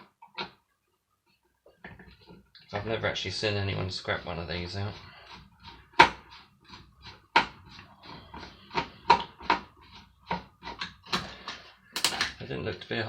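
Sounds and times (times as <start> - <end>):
sharp knocks and clicks of tools: 10.3 - 12.4.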